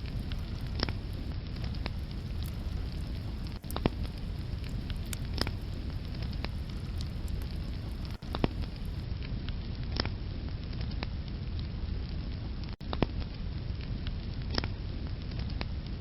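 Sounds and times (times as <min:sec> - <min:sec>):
fire crackles and pops: 0:00.0 - 0:09.1
low rumble of flames: 0:00.0 - 0:09.1.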